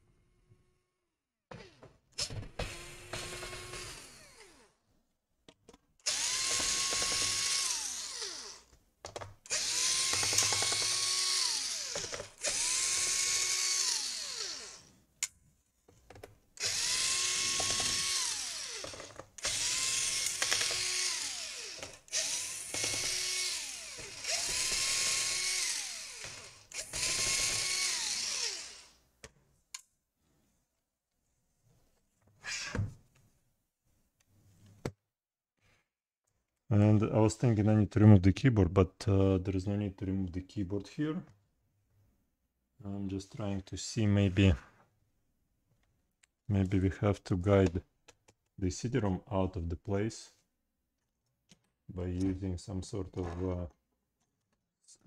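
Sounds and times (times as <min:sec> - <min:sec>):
electric drill-driver spinning: 0:01.5 - 0:04.8, 0:06.0 - 0:08.8, 0:09.4 - 0:15.0, 0:16.6 - 0:29.0.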